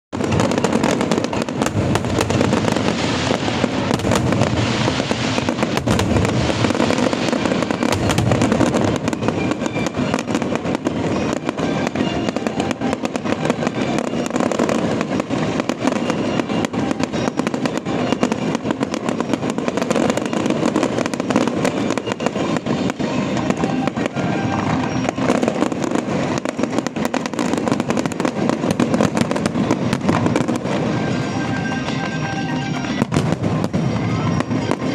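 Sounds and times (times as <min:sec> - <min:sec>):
fireworks crackling and popping: 0:00.1 - 0:34.9
show music: 0:29.6 - 0:34.9.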